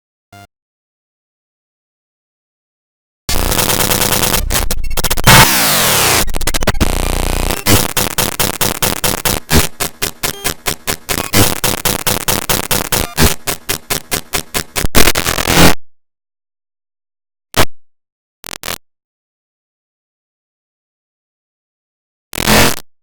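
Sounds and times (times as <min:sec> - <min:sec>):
harsh distorted electronic noise: 0:03.3 - 0:15.8, 0:22.4 - 0:22.8.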